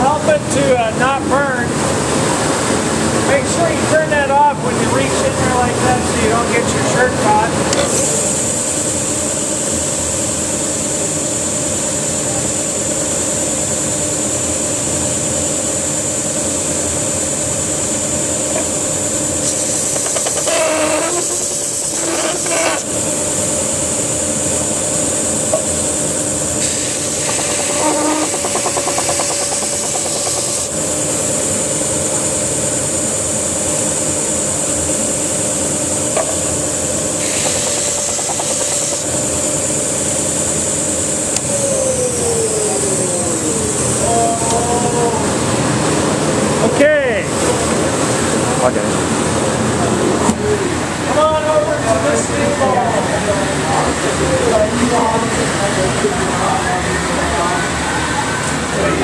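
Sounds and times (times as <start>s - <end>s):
belt sander sanding wood: 19.4s - 22.9s, 26.6s - 30.8s, 37.2s - 39.2s.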